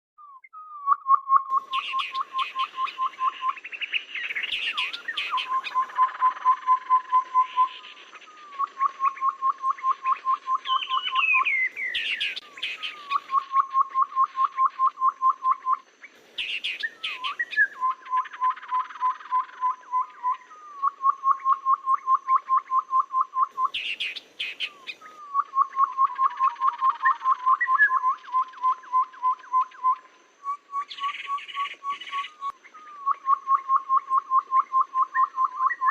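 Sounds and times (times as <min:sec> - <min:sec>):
bird piping notes: 0:00.2 - 0:35.9
bird chattering calls: 0:01.5 - 0:14.9, 0:16.4 - 0:28.7.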